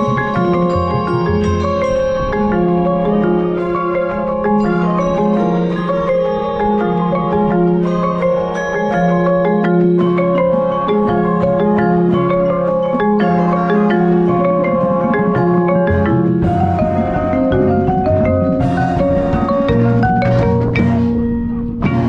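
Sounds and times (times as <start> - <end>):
marimba melody: 0.0 - 22.0
deep bass part: 15.7 - 22.0.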